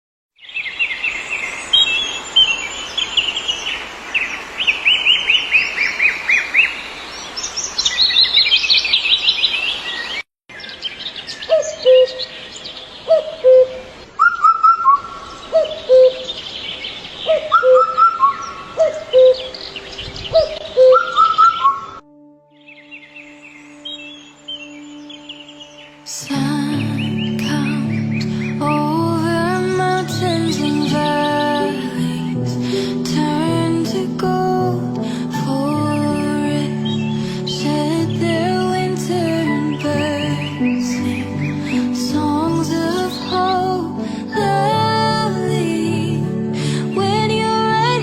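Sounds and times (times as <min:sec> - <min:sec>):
songbirds chirping and trilling: 0:00.4 - 0:33.7, 0:35.0 - 0:45.4
stream water rushing: 0:00.8 - 0:10.2.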